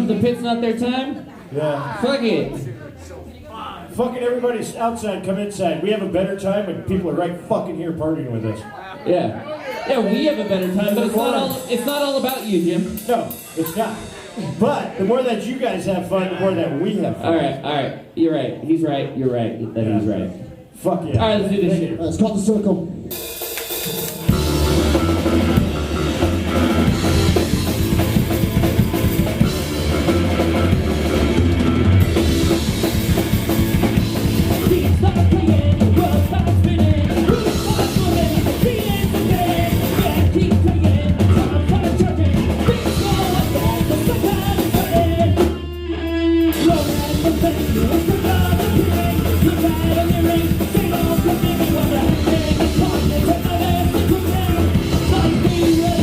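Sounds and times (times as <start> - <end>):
live rock band playing: 9.5 - 16.8, 22.8 - 56.0
drum kit: 10.1 - 16.1, 22.4 - 56.0.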